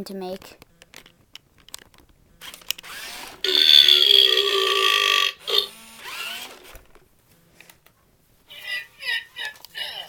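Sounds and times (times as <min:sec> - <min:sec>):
toy robot burp: 0:03.4 - 0:05.8.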